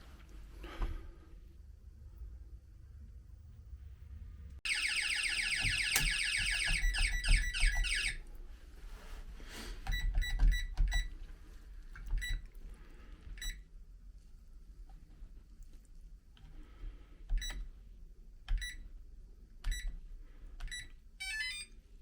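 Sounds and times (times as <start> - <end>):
fast-warbling alarm tone: 4.7 - 8.2
short keypad beeps: 4.7 - 8.2, 9.9 - 11.1.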